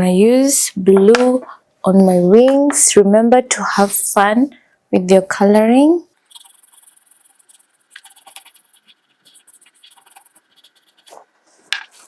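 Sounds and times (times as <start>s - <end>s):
colouring tool scratching paper: 6.3s - 11.4s.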